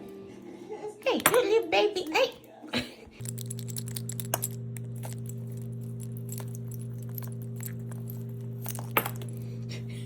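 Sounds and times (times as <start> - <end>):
low hum: 3.2 - 10.0.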